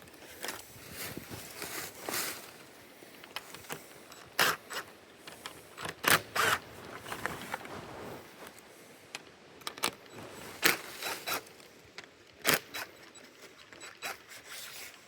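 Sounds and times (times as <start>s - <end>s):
tools clicking and scraping: 3.2s - 7.7s, 9.2s - 15.0s.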